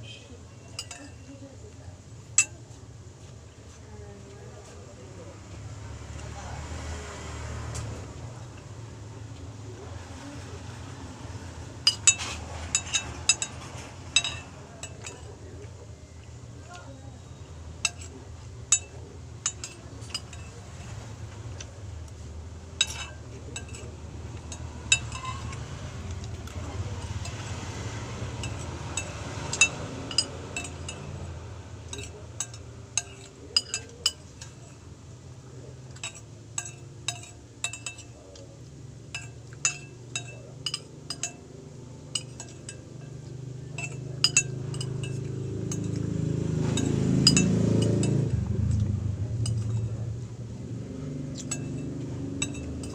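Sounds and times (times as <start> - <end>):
metal utensils clinking on plate: 0.6 - 1.4, 11.8 - 15.7, 16.6 - 22.2, 22.8 - 34.9, 35.7 - 38.5, 39.1 - 48.4, 49.3 - 50.0, 51.2 - 52.9.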